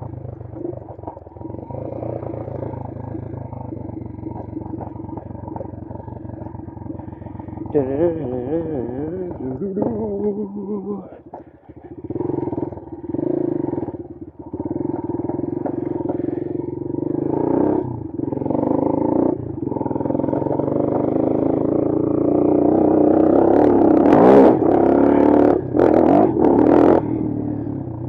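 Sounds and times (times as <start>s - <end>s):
motorcycle engine revving: 0.0s - 28.0s.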